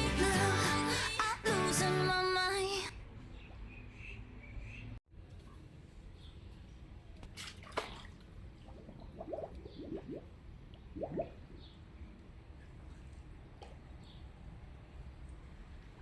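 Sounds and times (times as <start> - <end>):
water dripping and gurgling: 7.3 - 11.8.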